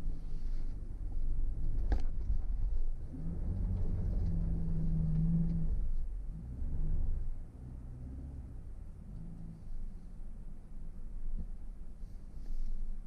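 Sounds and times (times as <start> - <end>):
car engine and road noise: 0.0 - 13.0.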